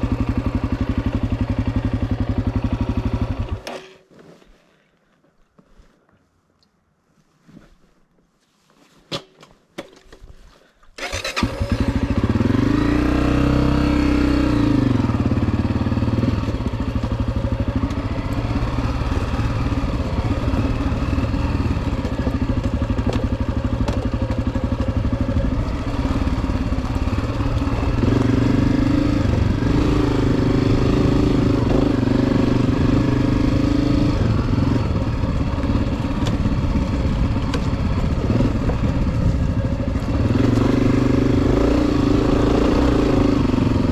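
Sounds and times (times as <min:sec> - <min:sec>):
dirt bike engine revving: 0:11.0 - 0:43.9.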